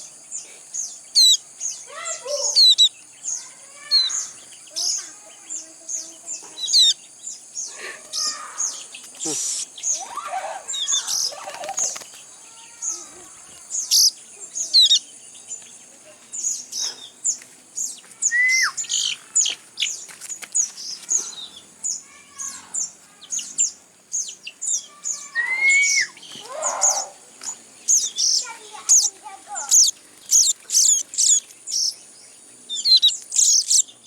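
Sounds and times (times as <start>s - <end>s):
young birds chirping: 0.0s - 34.0s
bird whistles: 18.2s - 19.1s, 25.1s - 27.2s.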